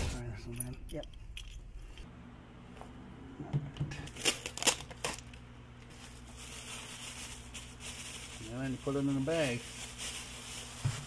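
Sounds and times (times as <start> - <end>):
low steady hum: 0.0 - 10.9.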